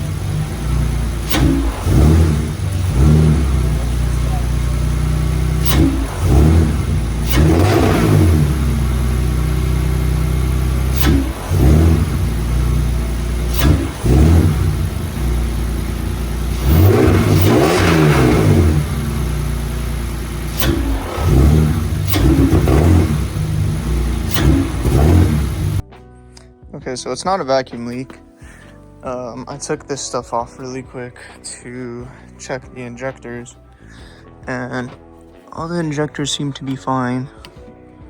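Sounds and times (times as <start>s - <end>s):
car engine idling and revving: 0.0s - 25.9s.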